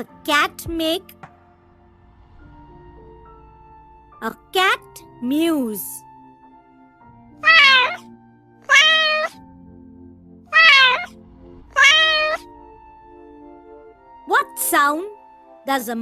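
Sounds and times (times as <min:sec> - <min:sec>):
soft background music: 0:00.0 - 0:16.0
cat meowing: 0:07.4 - 0:08.0, 0:08.6 - 0:09.4, 0:10.5 - 0:12.5.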